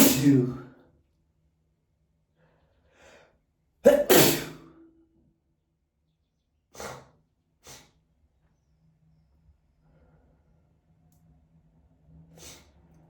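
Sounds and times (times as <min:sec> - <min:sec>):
person sneezing: 0:00.0 - 0:00.6, 0:03.8 - 0:04.9
person breathing: 0:02.3 - 0:03.4, 0:12.4 - 0:12.8.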